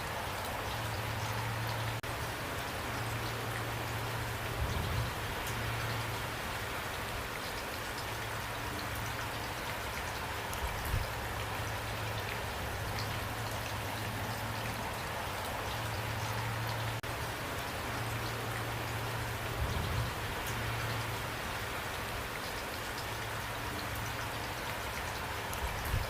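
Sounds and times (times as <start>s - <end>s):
raindrops ticking on a surface: 0.0s - 26.0s
steady rain falling: 0.0s - 26.0s.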